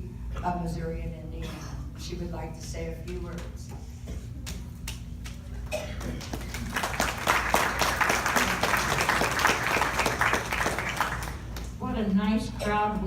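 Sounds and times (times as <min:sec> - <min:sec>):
audience applauding: 0:06.0 - 0:11.8.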